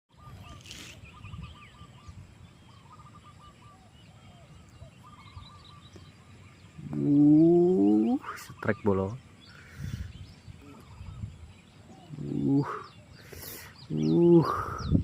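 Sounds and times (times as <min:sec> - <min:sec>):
birds chirping: 0:00.1 - 0:15.0.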